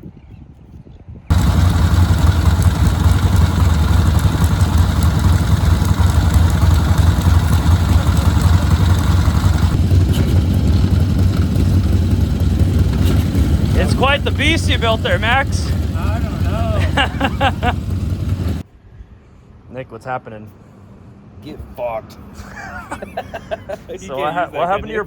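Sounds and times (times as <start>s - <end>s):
motorcycle engine rumbling: 1.3s - 18.6s.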